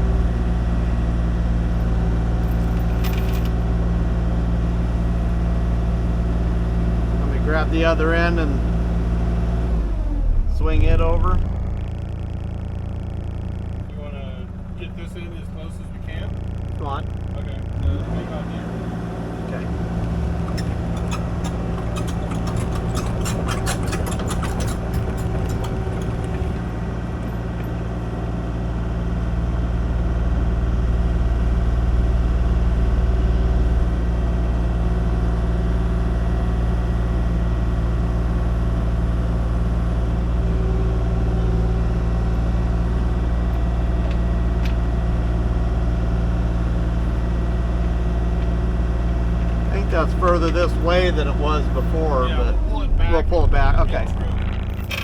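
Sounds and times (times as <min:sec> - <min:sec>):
excavator diesel engine running: 0:00.0 - 0:55.0
clicks and clanks: 0:02.6 - 0:03.6, 0:20.0 - 0:27.7, 0:54.3 - 0:55.0.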